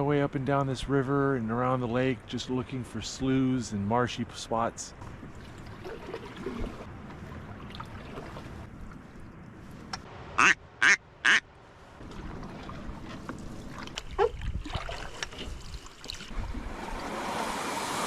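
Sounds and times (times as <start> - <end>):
paddle and water noise: 1.6 - 18.0
duck quacks: 10.4 - 11.4.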